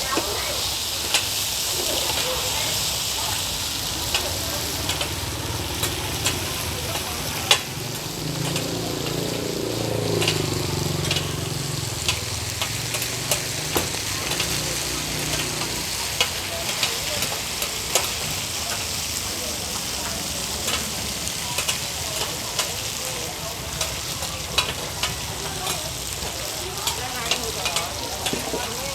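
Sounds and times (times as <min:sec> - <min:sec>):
cakes sizzling in hot oil: 0:00.0 - 0:28.9.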